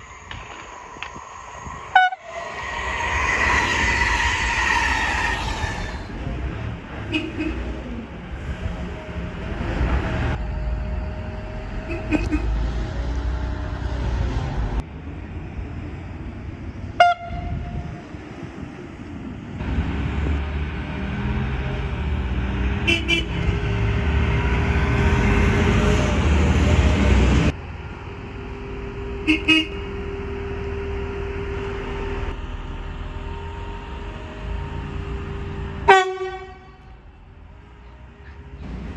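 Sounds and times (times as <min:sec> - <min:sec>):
passing train rumble: 0:00.0 - 0:38.9
train air horn toot: 0:01.7 - 0:06.0, 0:28.4 - 0:32.3, 0:35.9 - 0:36.9
electric horn double beep: 0:01.9 - 0:02.4, 0:28.5 - 0:32.3.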